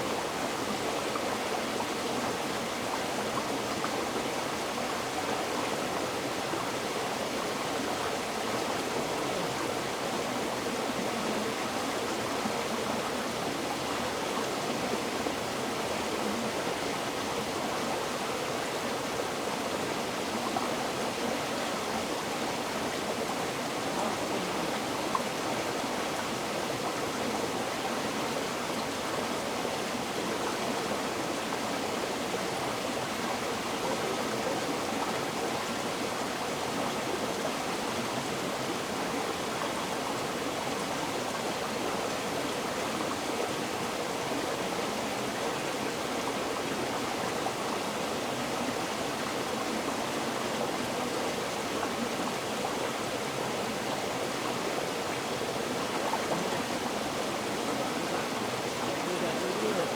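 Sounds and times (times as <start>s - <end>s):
river water rushing: 13.0s - 59.9s.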